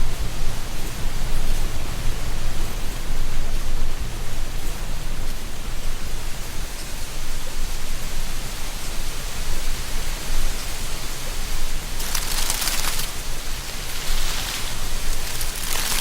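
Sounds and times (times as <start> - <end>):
wind through trees: 0.0 - 16.0
dry leaves rustling: 11.6 - 16.0.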